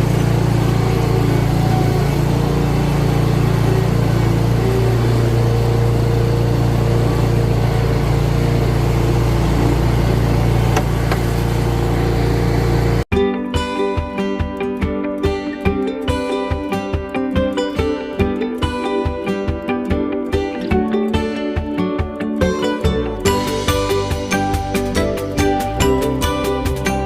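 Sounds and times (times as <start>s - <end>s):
engine running steadily: 0.0s - 13.1s
acoustic guitar music: 0.0s - 27.0s.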